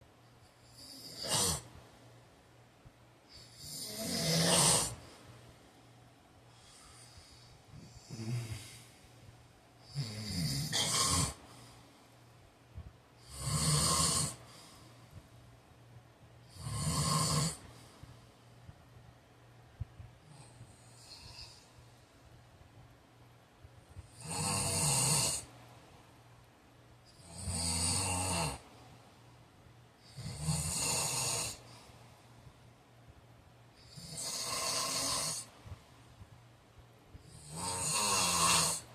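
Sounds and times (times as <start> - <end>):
man snoring loudly: 0.7 - 1.7, 3.4 - 5.0, 7.8 - 8.8, 9.8 - 11.4, 13.2 - 14.5, 16.5 - 17.6, 24.1 - 25.5, 27.1 - 28.6, 30.0 - 31.7, 33.8 - 35.5, 37.2 - 38.9.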